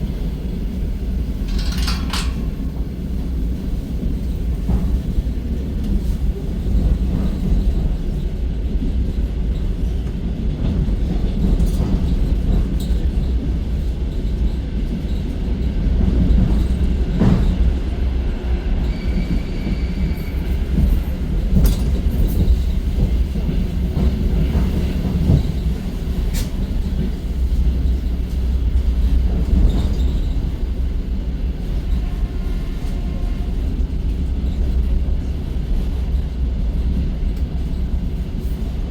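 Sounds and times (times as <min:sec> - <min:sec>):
train rumbling inside carriage: 0:00.0 - 0:38.9
wheels knocking over rail joints: 0:01.4 - 0:03.0.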